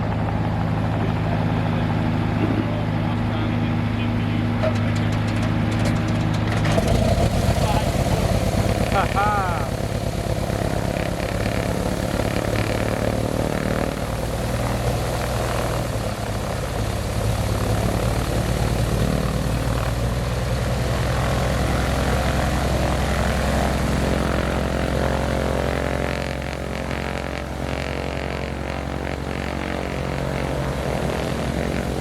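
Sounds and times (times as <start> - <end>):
propeller plane engine running: 0.0 - 32.0.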